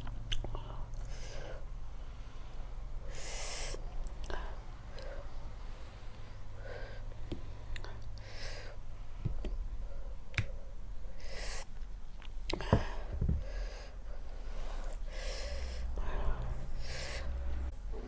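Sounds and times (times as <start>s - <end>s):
mouth clicks and smacks: 0.0s - 0.7s
person breathing: 0.5s - 11.8s, 12.5s - 18.0s.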